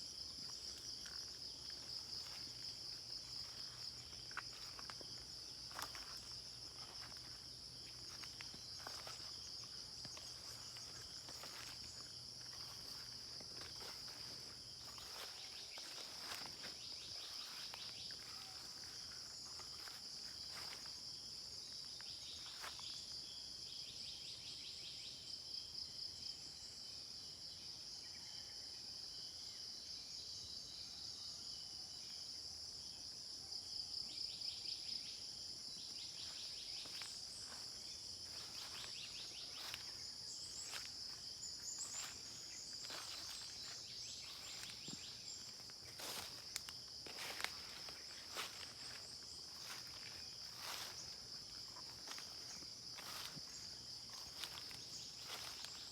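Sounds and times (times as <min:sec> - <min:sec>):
insects trilling: 0:00.0 - 0:55.9.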